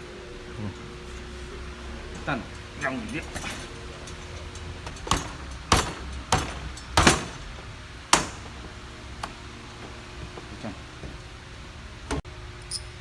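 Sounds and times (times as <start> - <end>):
sharp metallic knocks: 3.4 - 8.6.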